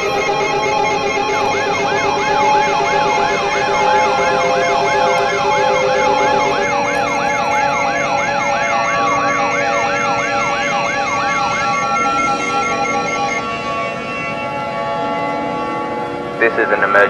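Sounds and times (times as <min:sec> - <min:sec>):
electronic siren yelping: 0:00.0 - 0:13.6
steady and pulsing alarm tones: 0:00.0 - 0:17.0.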